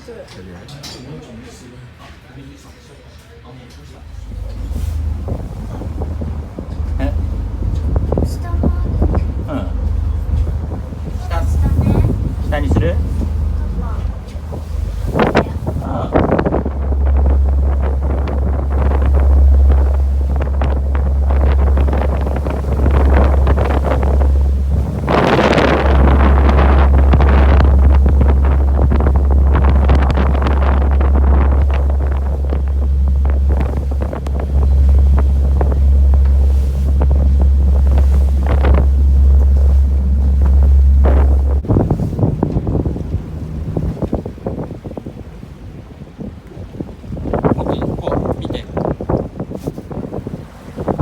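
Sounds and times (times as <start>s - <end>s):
wind buffeting microphone: 3.8s - 51.0s
water spray and swells: 4.0s - 51.0s.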